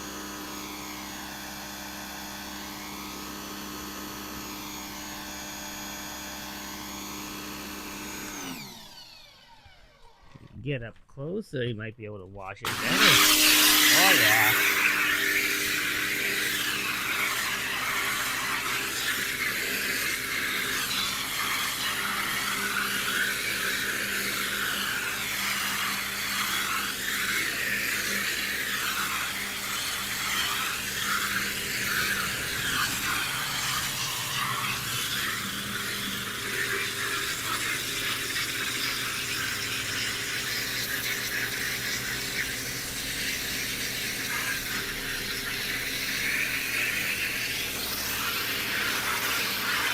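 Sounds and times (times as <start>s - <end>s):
pressure washer motor hum: 0.0s - 10.6s, 12.4s - 49.9s
water jet hissing against wall: 12.8s - 49.9s.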